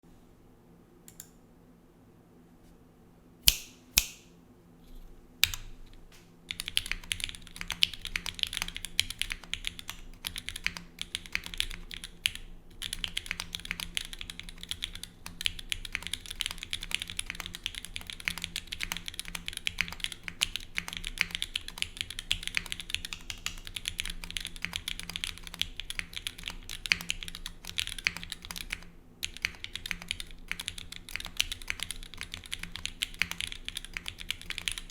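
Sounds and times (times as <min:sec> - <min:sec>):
mechanical keyboard typing: 0:06.5 - 0:34.9.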